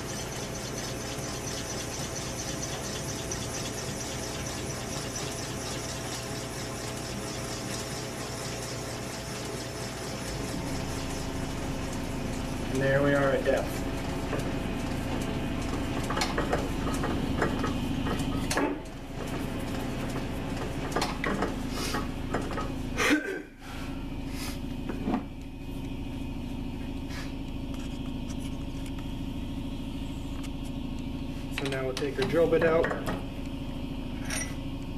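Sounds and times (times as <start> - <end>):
lathe humming: 0.0 - 22.8.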